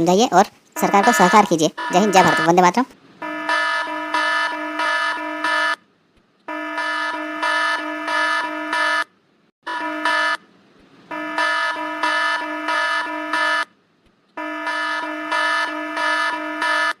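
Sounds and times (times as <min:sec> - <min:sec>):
buzzy phone alarm tone pulsing: 0:00.8 - 0:05.8, 0:06.5 - 0:09.1, 0:09.7 - 0:10.4, 0:11.1 - 0:13.7, 0:14.4 - 0:17.0.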